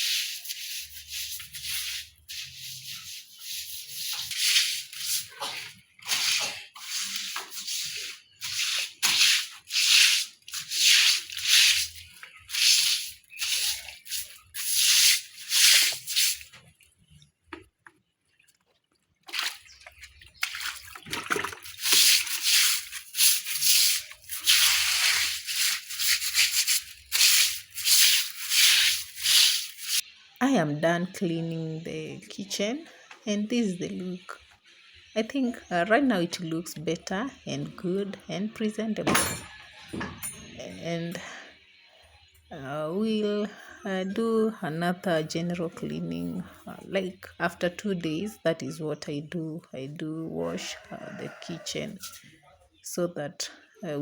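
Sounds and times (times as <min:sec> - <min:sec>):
bristles scrubbing wet surface: 0:00.0 - 0:16.8, 0:19.2 - 0:30.0.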